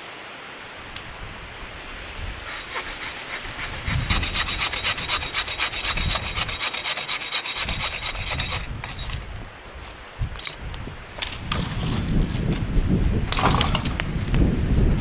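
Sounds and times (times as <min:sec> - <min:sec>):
hand tool rasping wood: 0:02.4 - 0:14.4.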